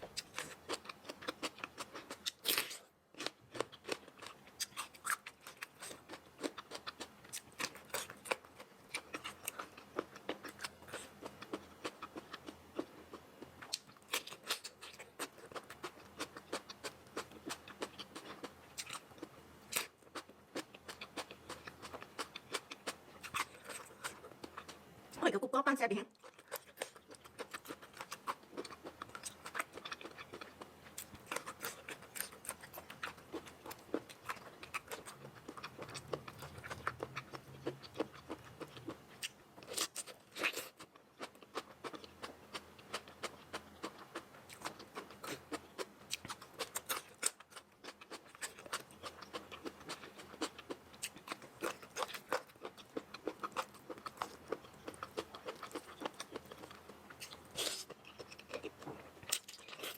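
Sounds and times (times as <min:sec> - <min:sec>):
person chewing noodles: 0:00.0 - 0:24.9, 0:26.1 - 0:59.9.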